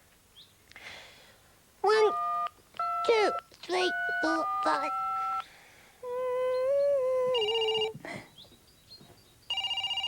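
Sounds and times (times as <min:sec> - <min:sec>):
telephone ringing: 0:02.1 - 0:05.4, 0:07.4 - 0:07.9, 0:09.5 - 0:10.0
person humming: 0:06.0 - 0:08.3.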